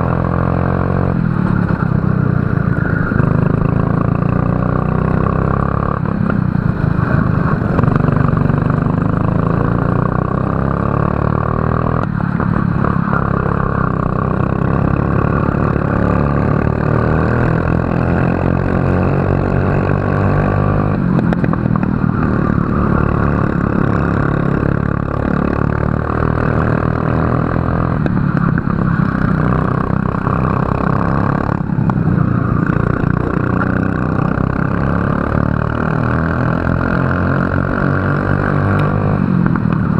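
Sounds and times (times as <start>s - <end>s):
racing kart engine: 0.0s - 39.9s.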